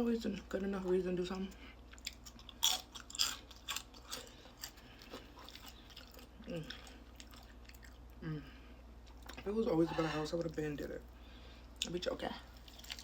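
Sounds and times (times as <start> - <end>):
person chewing crispy chicken: 1.8 - 8.2, 12.6 - 13.0.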